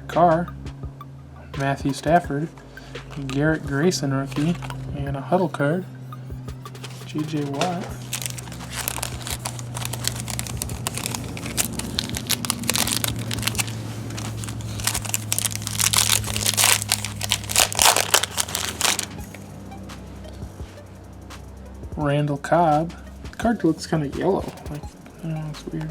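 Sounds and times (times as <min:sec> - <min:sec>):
background music: 0:00.0 - 0:25.9
wrapper crinkling and tearing: 0:06.8 - 0:19.4.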